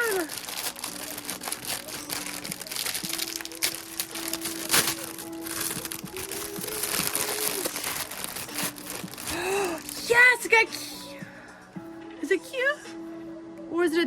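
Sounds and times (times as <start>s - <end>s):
packaging crinkling and rustling: 0.0s - 10.8s
soft background music: 0.0s - 14.0s.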